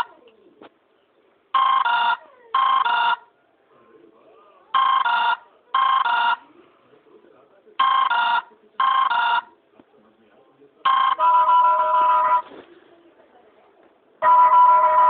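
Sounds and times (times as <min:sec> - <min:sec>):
phone ringtone warbling ring: 0:01.6 - 0:03.3, 0:04.8 - 0:06.4, 0:07.8 - 0:09.5, 0:10.9 - 0:12.5, 0:14.2 - 0:15.0.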